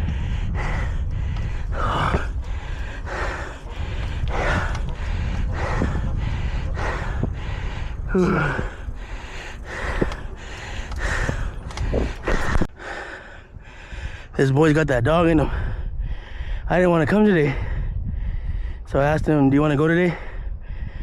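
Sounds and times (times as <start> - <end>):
heavy gasping breaths: 0.0 - 14.4.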